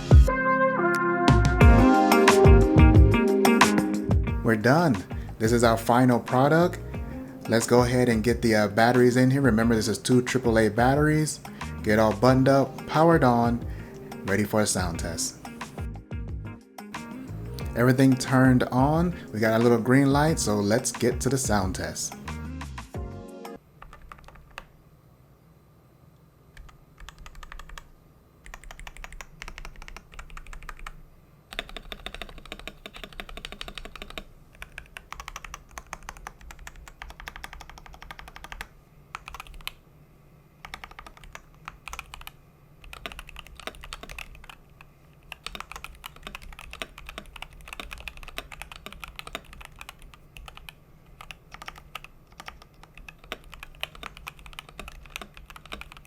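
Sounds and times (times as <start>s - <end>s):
mechanical keyboard typing: 23.8s - 24.7s, 26.6s - 39.8s, 40.6s - 44.6s, 45.2s - 56.0s.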